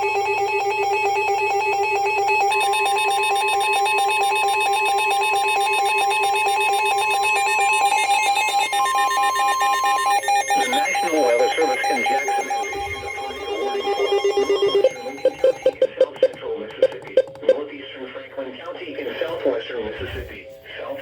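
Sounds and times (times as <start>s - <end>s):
electronic alarm tone trilling: 0.0s - 17.6s
higher steady tone: 8.6s - 17.5s.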